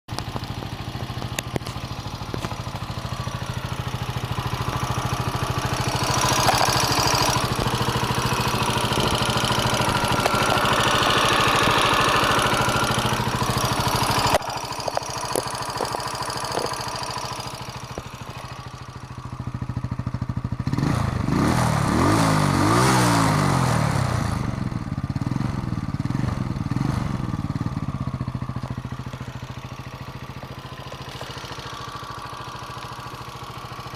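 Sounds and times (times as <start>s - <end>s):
engine running with valve knock: 0.1s - 33.9s
engine revving: 3.2s - 18.7s, 20.6s - 27.6s.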